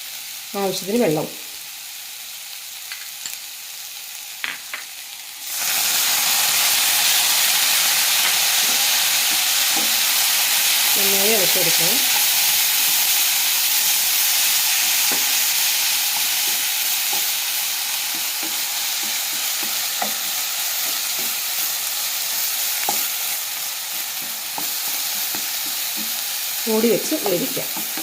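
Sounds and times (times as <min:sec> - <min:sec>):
greens sizzling in a pan: 0:00.0 - 0:28.0.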